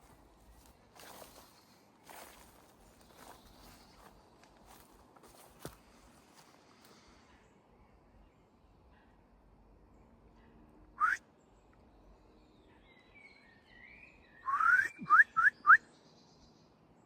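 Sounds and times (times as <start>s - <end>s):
rising whistles: 11.0s - 11.2s, 14.4s - 15.8s.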